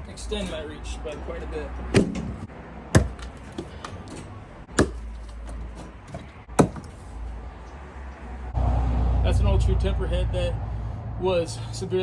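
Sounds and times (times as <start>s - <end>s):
axe striking into logs: 1.9s - 3.9s, 4.7s - 7.0s.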